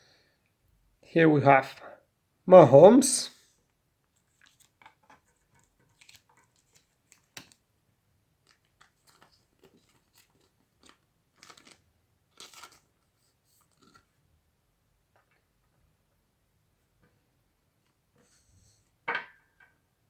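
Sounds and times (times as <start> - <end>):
trading cards rustling: 4.2 - 7.6, 8.4 - 11.8, 12.4 - 12.9.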